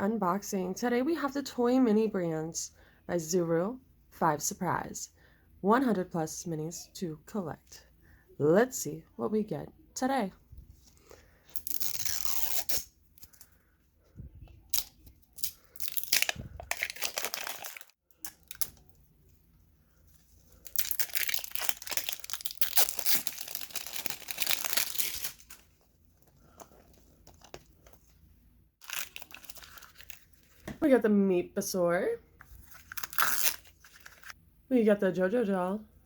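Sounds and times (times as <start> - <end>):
plastic wrapping tearing and crinkling: 11.6 - 12.9, 14.7 - 18.9, 20.6 - 25.7, 28.8 - 30.4, 32.7 - 34.4.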